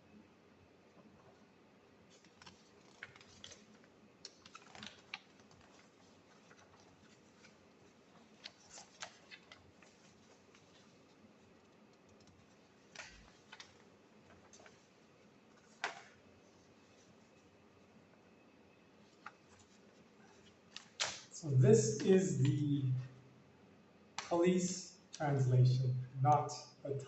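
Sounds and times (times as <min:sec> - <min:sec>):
small clicks and rustles: 0:00.9 - 0:18.3, 0:19.0 - 0:21.4.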